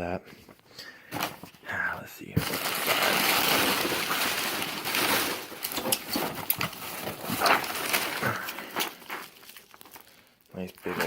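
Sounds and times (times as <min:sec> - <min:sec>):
cardboard rustling: 0:00.3 - 0:11.0
boxes knocking and tapping: 0:02.3 - 0:09.3.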